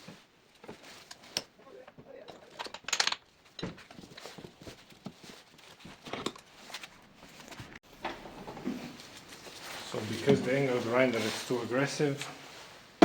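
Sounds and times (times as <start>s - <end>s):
tools and metal parts knocking: 1.4s - 4.6s.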